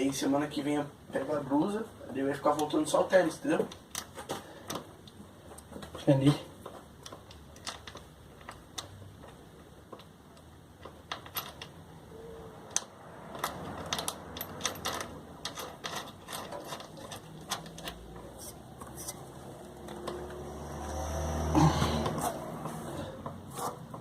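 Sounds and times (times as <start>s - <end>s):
tools being handled: 12.6s - 20.5s.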